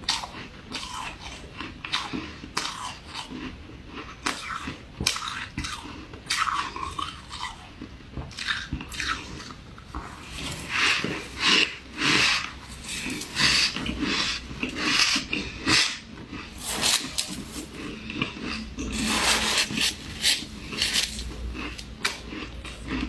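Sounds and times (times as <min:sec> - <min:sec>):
ice being chewed: 0:00.0 - 0:23.0.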